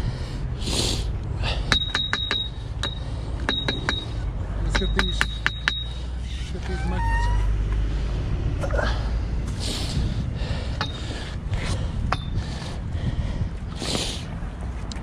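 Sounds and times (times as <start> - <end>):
wind buffeting microphone: 7.5 - 15.0.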